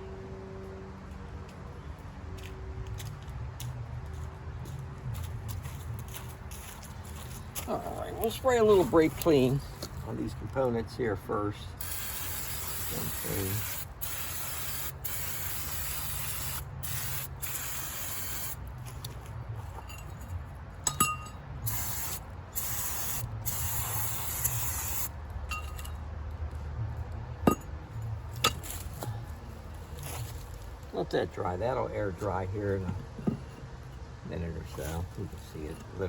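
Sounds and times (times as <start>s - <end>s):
aerosol spray hissing: 11.8s - 18.6s, 21.7s - 25.1s
light metallic clinks: 19.7s - 21.4s.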